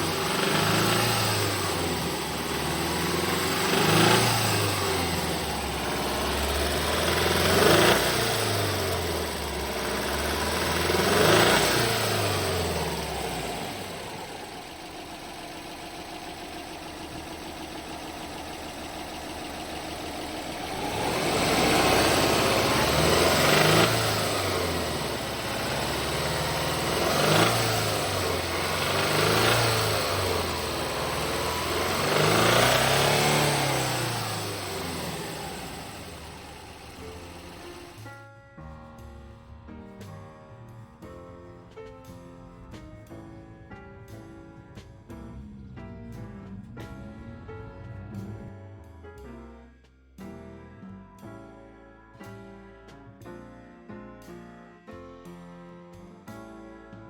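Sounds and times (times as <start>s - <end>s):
car engine revving and idling: 0.0s - 38.2s, 43.7s - 49.6s.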